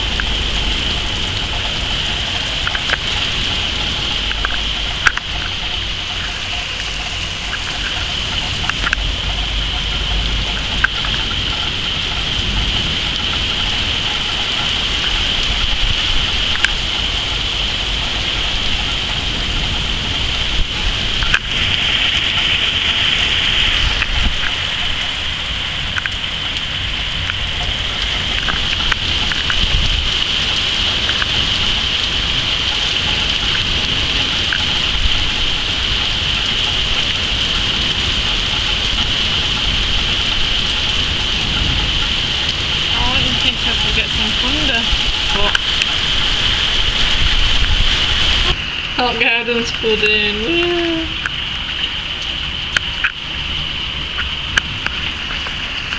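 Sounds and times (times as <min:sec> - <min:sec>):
drops ticking on hard surfaces: 0:00.0 - 0:21.9, 0:25.8 - 0:48.5
heavy rain pouring: 0:00.0 - 0:55.9.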